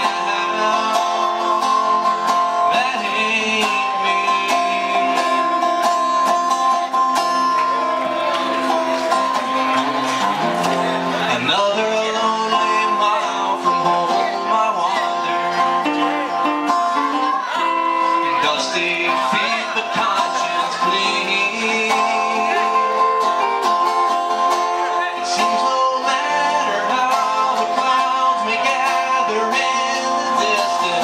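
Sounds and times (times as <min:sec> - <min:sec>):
acoustic guitar picked and strummed: 0:00.0 - 0:31.0
held higher tone: 0:17.0 - 0:19.2.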